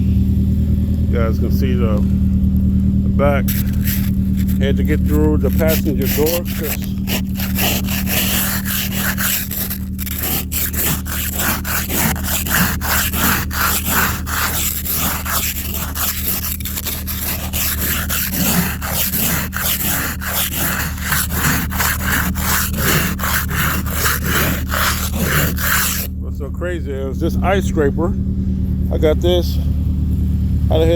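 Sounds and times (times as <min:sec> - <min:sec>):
steady low hum: 0:00.0 - 0:30.8
ice scraper scraping ice: 0:03.5 - 0:26.1.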